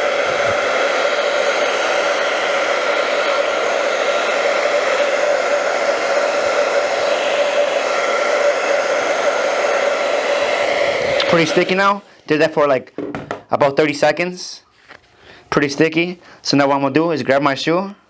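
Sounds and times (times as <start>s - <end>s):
blow dryer running: 0.0s - 12.8s.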